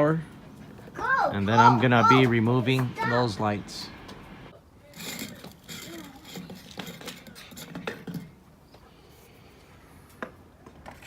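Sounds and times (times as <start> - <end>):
handling clicks and scrapes: 4.9 - 8.9.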